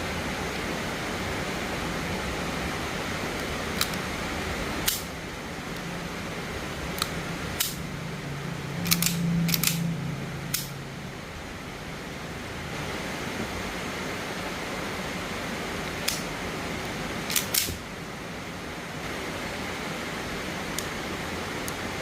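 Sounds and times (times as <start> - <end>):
steady hiss: 0.0 - 22.0
pistol mechanical clicks: 4.8 - 5.1, 7.0 - 7.8, 8.8 - 9.8, 10.5 - 10.7, 16.0 - 16.3, 17.2 - 17.8.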